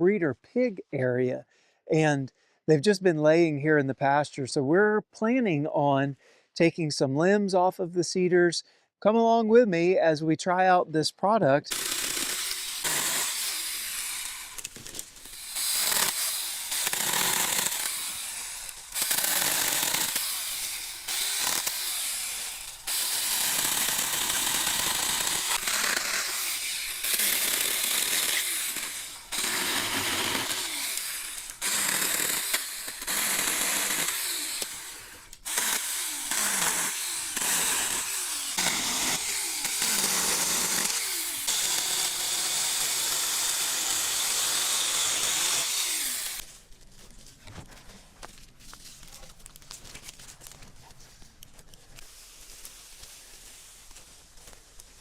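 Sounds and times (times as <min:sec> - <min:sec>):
power saw cutting wood: 0:11.7 - 0:46.5.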